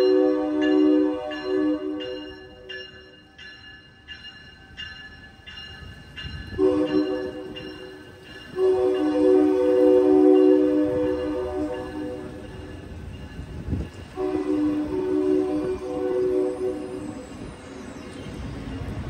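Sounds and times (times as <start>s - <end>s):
train air horn: 0.0s - 2.2s, 6.6s - 7.6s, 8.5s - 12.4s, 14.1s - 17.4s
bell ringing: 0.0s - 9.2s.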